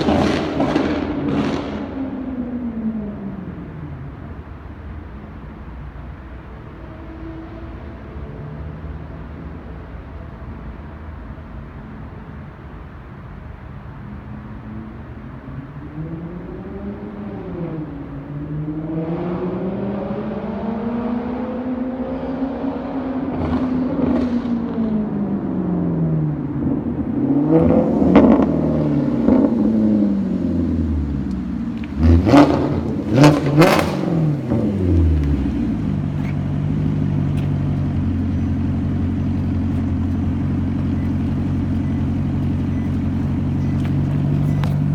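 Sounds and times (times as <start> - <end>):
car engine revving: 0.0 - 3.6, 15.7 - 44.9
engine throttle blips: 0.0 - 3.8, 26.4 - 44.9
engine idling: 32.6 - 44.9.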